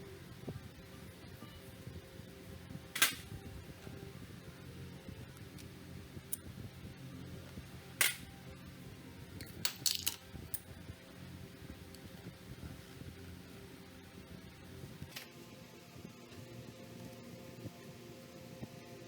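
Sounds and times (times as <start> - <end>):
low steady hum: 0.0 - 19.0
metal tools clicking and tapping: 9.4 - 10.6.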